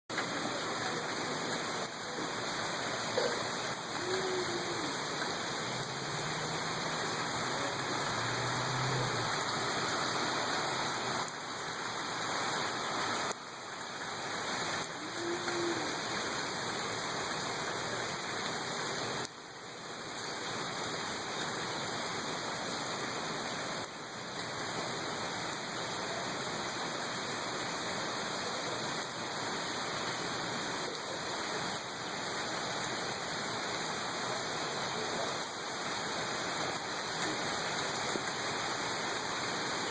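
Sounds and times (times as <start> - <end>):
steady rainfall: 0.1 - 39.9.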